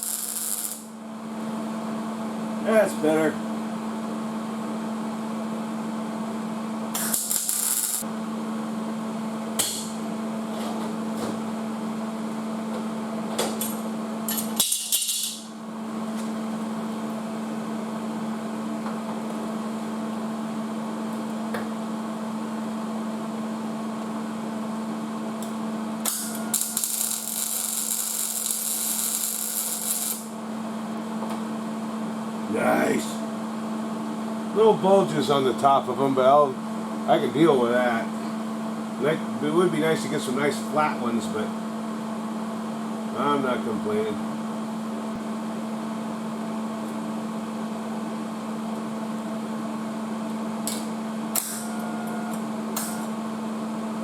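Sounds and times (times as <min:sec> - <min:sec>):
welder crackling and hissing: 0:00.0 - 0:01.0, 0:06.9 - 0:08.1, 0:26.0 - 0:30.4
steady machine hum: 0:00.0 - 0:54.0.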